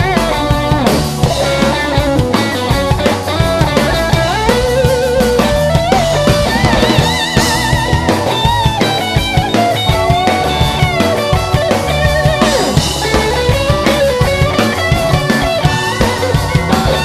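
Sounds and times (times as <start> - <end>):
drum kit beat: 0.0 - 17.0
guitar held notes: 0.0 - 17.0
live rock band playing: 0.0 - 17.0.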